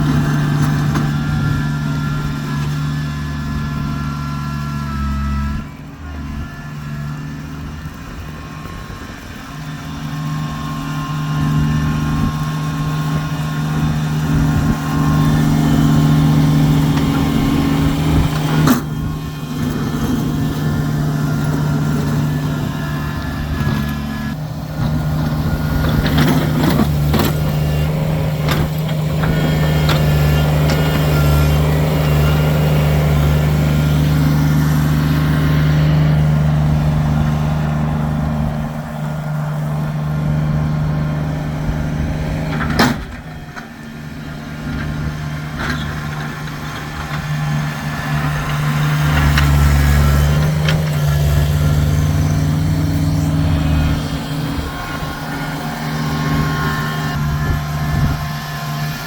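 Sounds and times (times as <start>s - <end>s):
tractor engine running: 0.0s - 59.0s.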